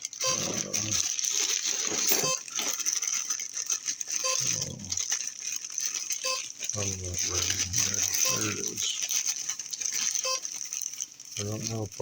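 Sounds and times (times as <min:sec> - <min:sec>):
handling clicks and rattles: 0:00.0 - 0:12.0
short electronic beeps: 0:02.2 - 0:02.5, 0:04.2 - 0:04.9, 0:06.2 - 0:06.5, 0:08.2 - 0:08.8, 0:10.2 - 0:10.5.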